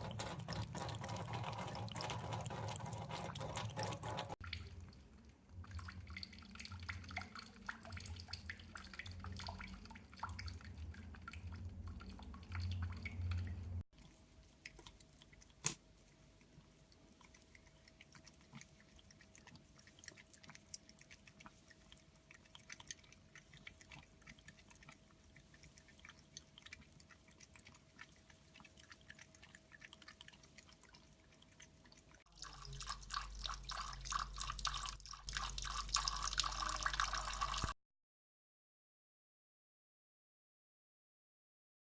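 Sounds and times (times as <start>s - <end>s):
water dripping from taps: 0.0s - 13.8s, 31.9s - 37.8s
faint steady hum: 0.0s - 37.7s
cats lapping water: 0.0s - 37.8s.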